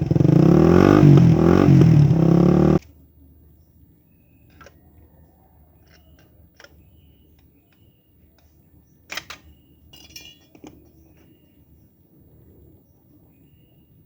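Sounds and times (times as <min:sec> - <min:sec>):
light clicks and clinks: 0:05.6 - 0:11.4.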